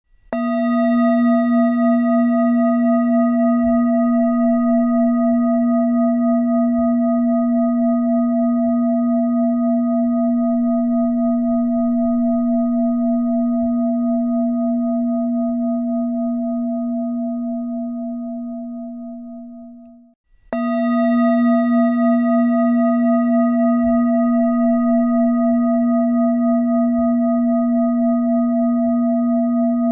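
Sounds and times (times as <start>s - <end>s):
meditation bell ringing: 0.3s - 29.9s.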